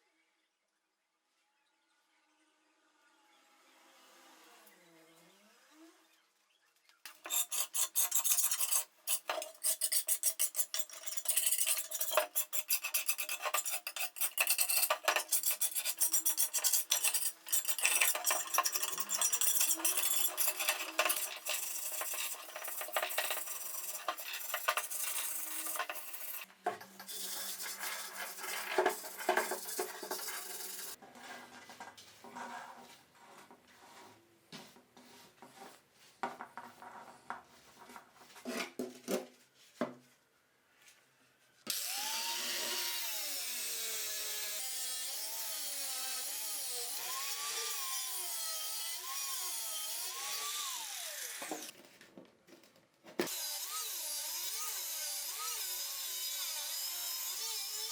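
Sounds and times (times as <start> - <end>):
metal being scraped: 7.1 - 31.0.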